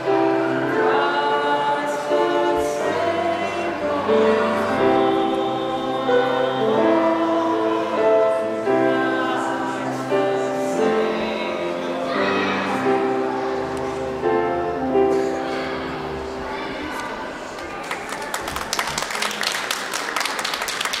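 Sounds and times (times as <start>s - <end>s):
group singing a holiday song: 0.0s - 17.1s
musical accompaniment: 0.0s - 17.7s.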